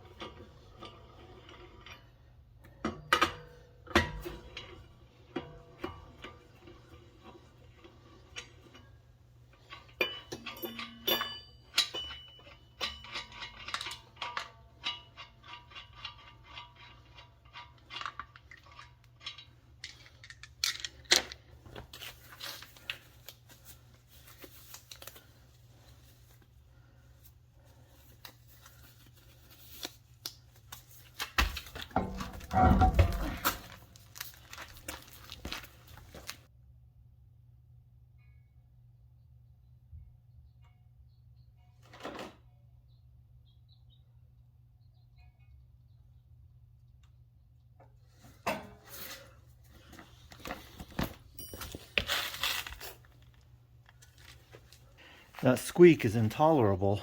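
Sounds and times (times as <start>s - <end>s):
low rumbling handling noise: 31.9s - 34.3s.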